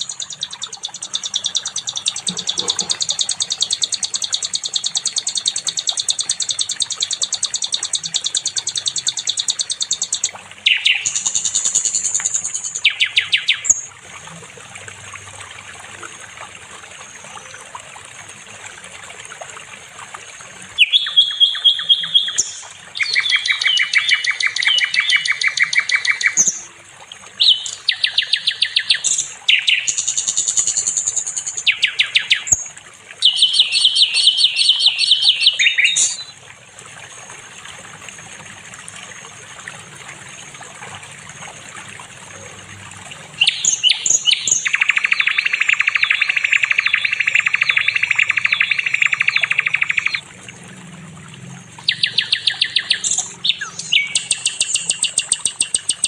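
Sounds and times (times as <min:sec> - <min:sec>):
bird singing high trills: 0:00.0 - 0:13.9, 0:20.8 - 0:26.7, 0:27.4 - 0:36.4, 0:43.4 - 0:50.2, 0:51.9 - 0:56.0.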